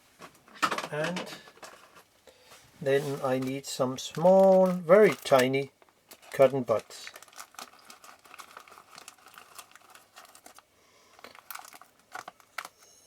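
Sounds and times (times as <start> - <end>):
plastic packaging crinkling: 2.8 - 13.0.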